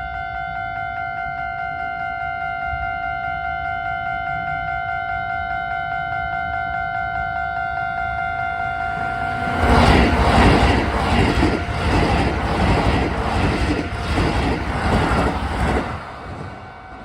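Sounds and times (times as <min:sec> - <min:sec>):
train wheels clattering over rail joints: 0:09.6 - 0:16.6.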